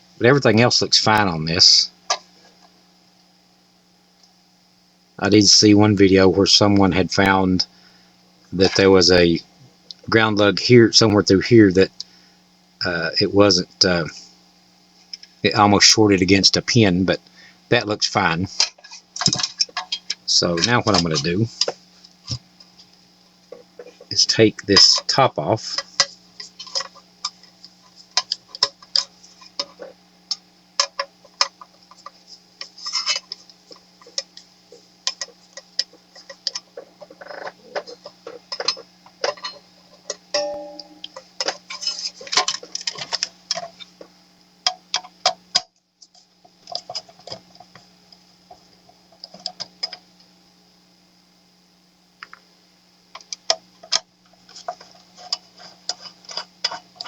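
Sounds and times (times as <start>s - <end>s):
steady low hum: 0.0s - 45.0s.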